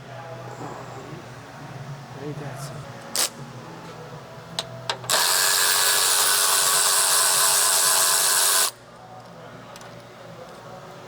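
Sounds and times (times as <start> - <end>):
handheld power tool running: 5.1 - 8.8.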